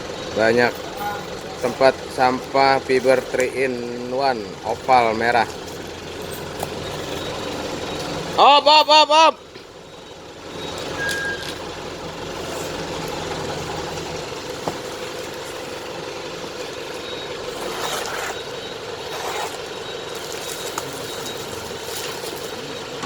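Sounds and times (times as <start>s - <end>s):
vehicle engine running: 0.0s - 23.0s.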